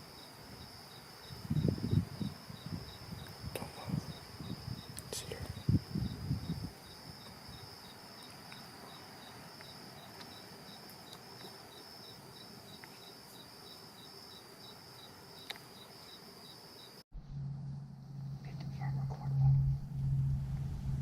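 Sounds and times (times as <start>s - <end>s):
insect buzzing chorus: 0.0s - 17.0s
low steady hum: 17.2s - 21.0s.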